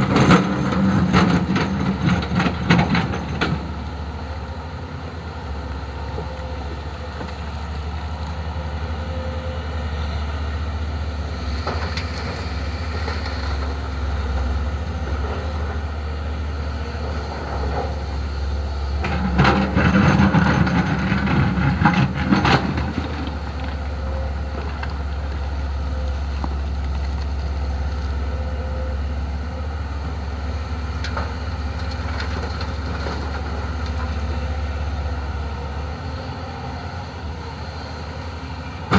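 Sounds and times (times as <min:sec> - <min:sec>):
clattering and scraping soil: 0:00.0 - 0:04.2, 0:11.4 - 0:16.1, 0:16.7 - 0:28.4, 0:30.0 - 0:36.1
excavator diesel engine droning: 0:00.0 - 0:38.9.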